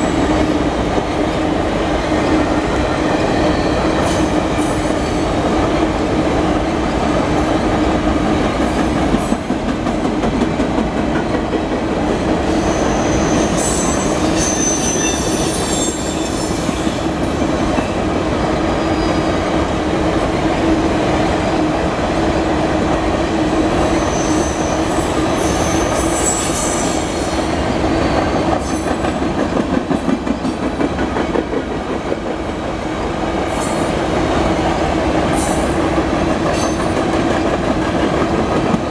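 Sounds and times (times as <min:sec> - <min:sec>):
freight train wheels rumbling: 0:00.0 - 0:38.9
wheel flange squeals: 0:12.5 - 0:17.0, 0:23.8 - 0:29.0.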